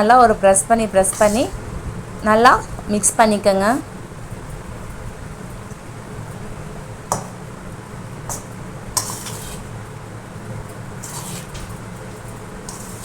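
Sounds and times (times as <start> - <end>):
utensil scraping a pan: 1.0 - 1.6, 8.3 - 9.8, 11.0 - 11.8, 12.6 - 13.0.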